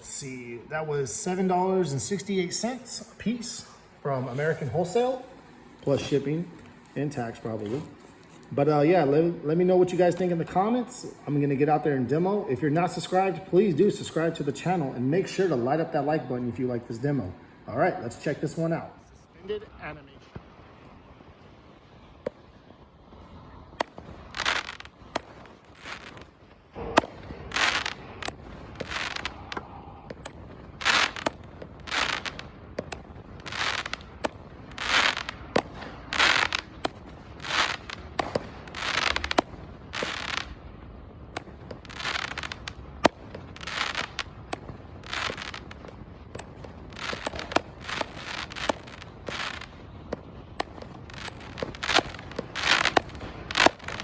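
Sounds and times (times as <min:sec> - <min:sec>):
firework cake shots: 0:23.4 - 0:40.6, 0:41.3 - 0:54.0.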